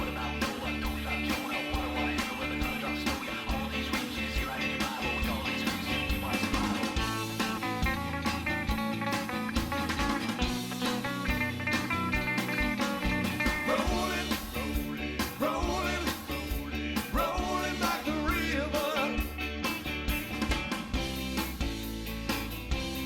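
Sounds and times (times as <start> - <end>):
person singing: 0.0 - 7.0, 13.4 - 19.3
rock music with guitar and drums: 0.0 - 23.0.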